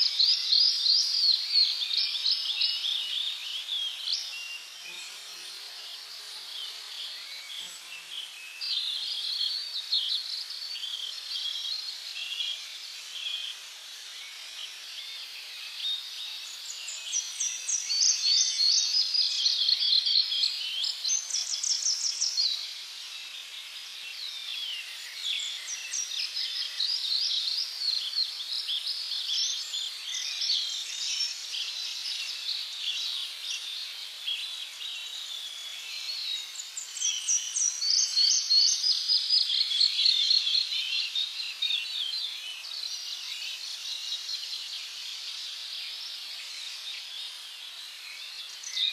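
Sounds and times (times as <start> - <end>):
insects hissing: 0.0 - 48.9.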